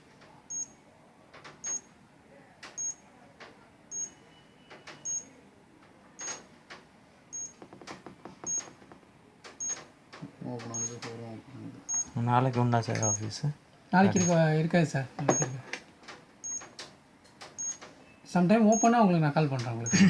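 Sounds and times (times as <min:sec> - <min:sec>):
alarm panel high-pitched beeps: 0:00.5 - 0:00.8, 0:01.6 - 0:01.9, 0:02.8 - 0:03.0, 0:03.9 - 0:05.3, 0:06.2 - 0:06.4, 0:07.3 - 0:07.6, 0:08.5 - 0:08.7, 0:09.6 - 0:09.8, 0:10.7 - 0:11.0, 0:11.9 - 0:12.2, 0:13.0 - 0:13.4, 0:14.1 - 0:14.4, 0:16.4 - 0:16.7, 0:17.6 - 0:19.0.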